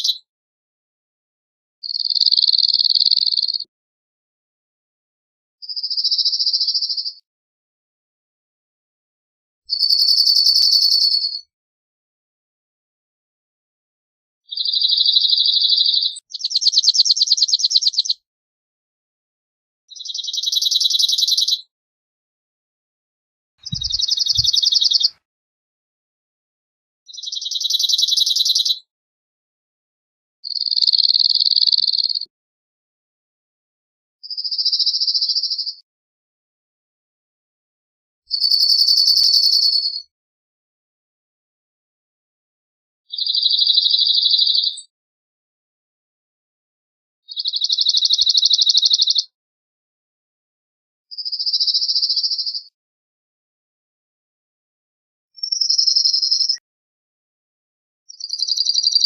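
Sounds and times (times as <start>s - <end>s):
bird rattling trills: 23.6s - 25.1s
bird singing dry rattling trills: 23.6s - 25.2s, 38.4s - 40.0s.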